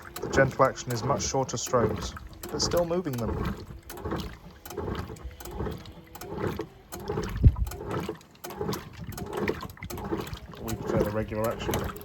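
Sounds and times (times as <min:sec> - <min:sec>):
washing machine agitator sloshing: 0:00.0 - 0:12.0.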